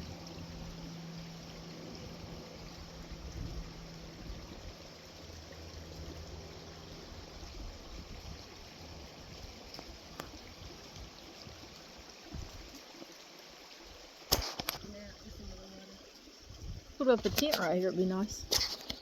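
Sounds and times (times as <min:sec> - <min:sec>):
low rumble: 0:00.0 - 0:09.1
creek water flowing: 0:00.0 - 0:19.0.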